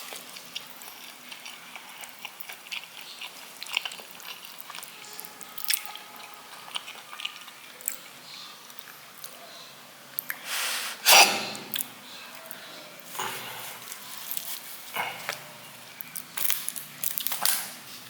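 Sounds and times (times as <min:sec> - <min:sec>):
person chewing and biting food: 0:00.0 - 0:05.0, 0:05.6 - 0:08.1.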